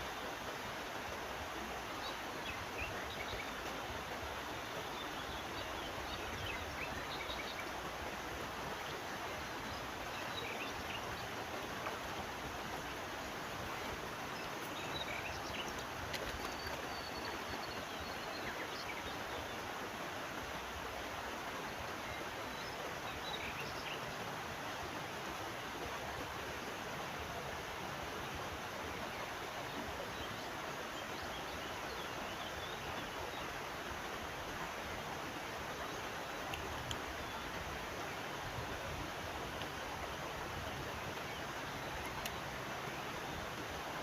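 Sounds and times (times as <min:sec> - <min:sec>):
river rushing: 0:00.0 - 0:44.0.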